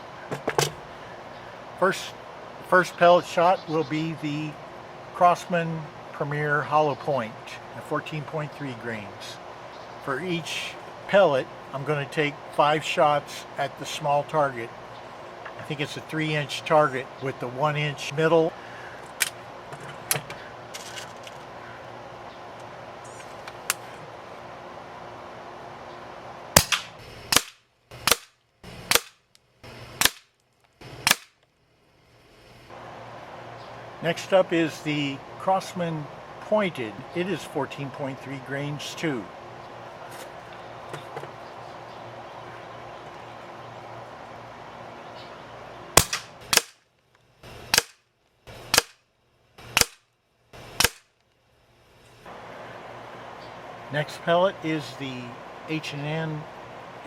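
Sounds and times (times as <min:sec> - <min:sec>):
air rifle shots: 0:26.6 - 0:29.2, 0:30.0 - 0:30.3, 0:31.0 - 0:31.4, 0:46.0 - 0:46.8, 0:47.7 - 0:48.0, 0:48.6 - 0:49.0, 0:49.6 - 0:50.0, 0:50.8 - 0:51.1.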